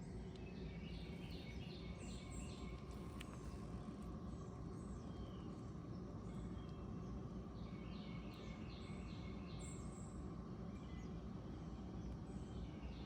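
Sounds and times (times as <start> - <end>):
low outdoor background: 0.0 - 13.0.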